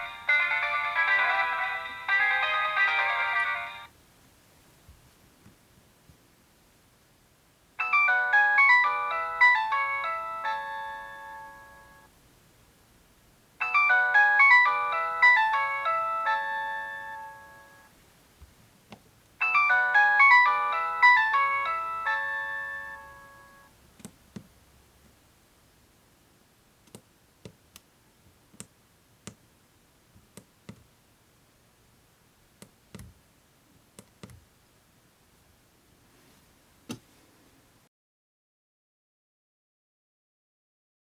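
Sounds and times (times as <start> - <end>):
polyphonic ringtone melody: 0.0 - 3.9, 7.8 - 12.1, 13.6 - 17.9, 19.4 - 23.7.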